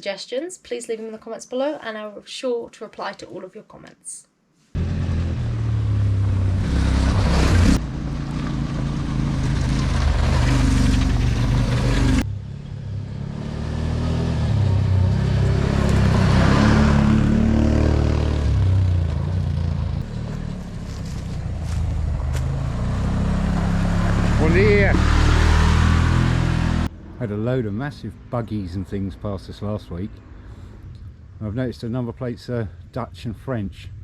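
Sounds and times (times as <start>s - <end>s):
off-road buggy engines revving: 4.8s - 31.7s.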